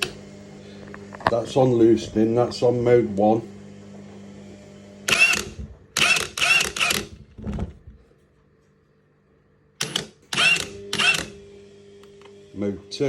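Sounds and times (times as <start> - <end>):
impact wrench motor bursts: 5.0 - 7.2, 9.8 - 11.5.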